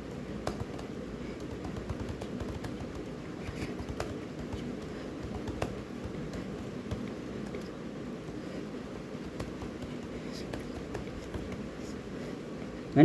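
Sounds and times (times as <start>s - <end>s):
low background hum: 0.0s - 13.0s
keyboard typing: 0.4s - 7.7s.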